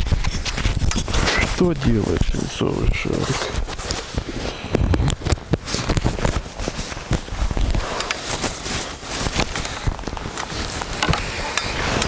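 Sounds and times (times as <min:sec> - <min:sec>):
handling knocks and rustles: 0:00.0 - 0:12.0.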